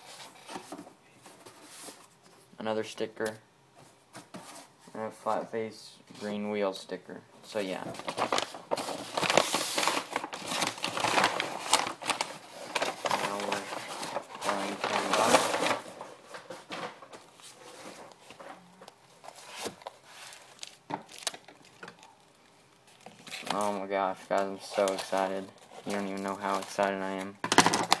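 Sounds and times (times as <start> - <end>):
packaging crinkling: 7.7 - 16.4, 19.2 - 28.0.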